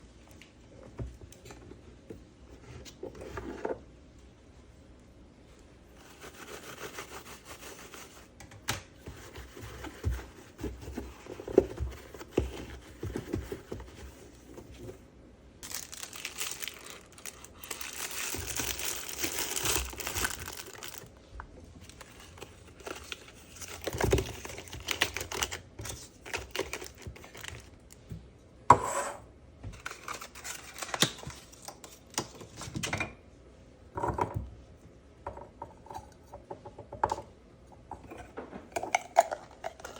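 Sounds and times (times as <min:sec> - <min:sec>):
plastic packaging crinkling and tearing: 0:15.6 - 0:21.2, 0:21.8 - 0:27.9, 0:29.8 - 0:32.1.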